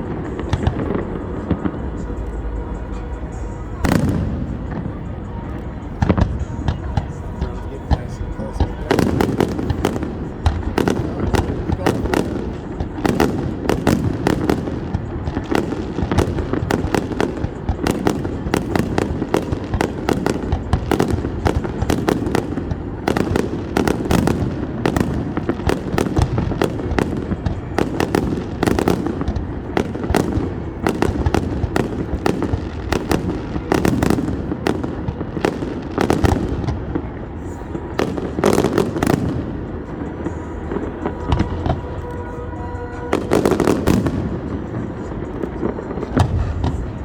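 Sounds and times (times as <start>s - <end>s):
fireworks bangs and pops: 0.0s - 47.0s.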